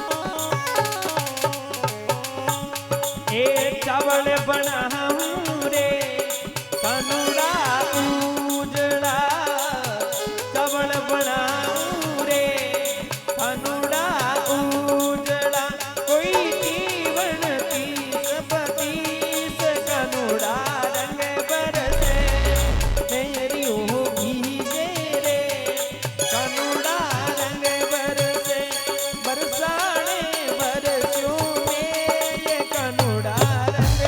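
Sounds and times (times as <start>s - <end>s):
percussion beat: 0.0s - 34.0s
deep bass thump: 21.9s - 23.4s
steady drone: 21.9s - 23.4s.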